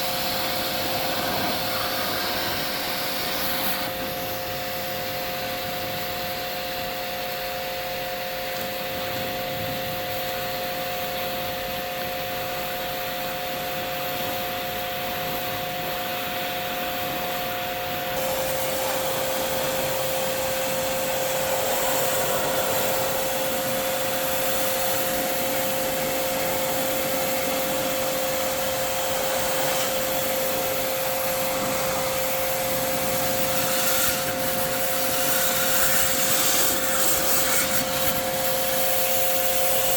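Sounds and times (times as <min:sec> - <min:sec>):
small electric motor whine: 0:00.0 - 0:10.3, 0:17.1 - 0:39.9
rushing rubbing hiss: 0:18.1 - 0:39.9.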